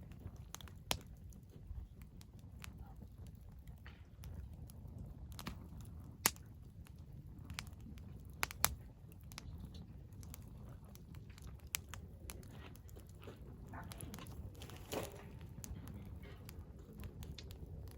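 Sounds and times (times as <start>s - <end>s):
wood fire crackling and popping: 0.0s - 17.9s.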